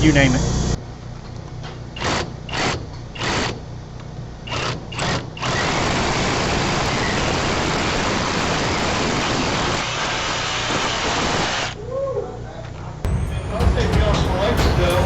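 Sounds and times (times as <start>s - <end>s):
power drill boring: 2.0s - 3.6s, 4.5s - 11.8s.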